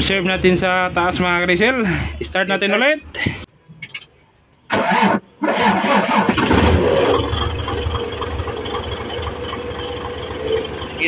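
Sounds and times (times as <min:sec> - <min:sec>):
diesel engine cranking and idling: 0:04.7 - 0:11.0.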